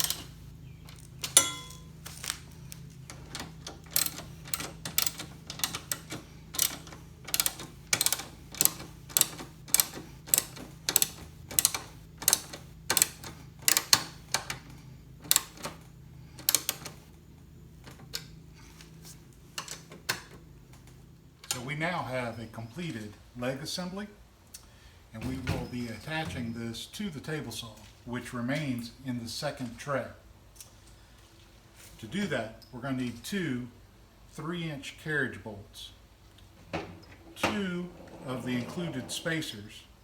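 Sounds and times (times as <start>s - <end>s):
socket ratchet clicking: 0.0s - 0.4s, 3.1s - 14.6s, 15.2s - 15.8s, 16.4s - 17.1s.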